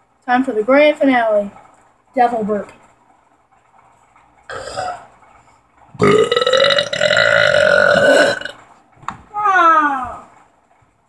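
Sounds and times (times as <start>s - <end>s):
long loud burp: 4.5s - 5.1s, 6.0s - 8.6s.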